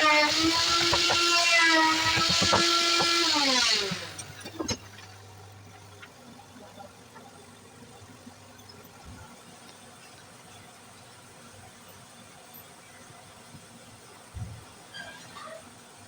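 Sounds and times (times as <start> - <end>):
power tool motor whining: 0.0 - 4.5.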